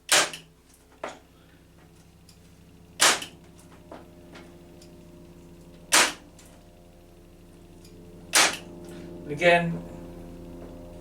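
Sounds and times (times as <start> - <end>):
electric nailer firing: 0.0 - 0.5, 3.0 - 3.4, 5.9 - 6.4, 8.3 - 8.8.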